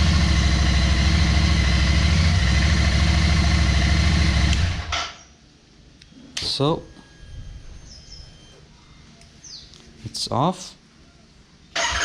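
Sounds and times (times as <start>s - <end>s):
motorcycle engine idling: 0.0s - 4.9s.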